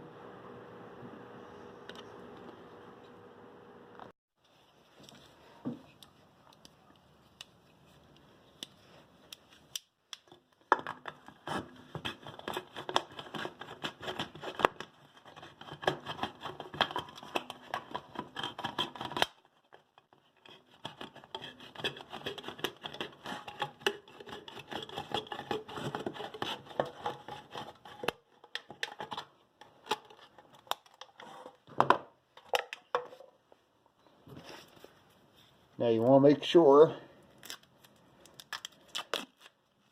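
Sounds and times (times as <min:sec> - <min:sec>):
tool scratching and crackling: 0:20.1 - 0:28.2.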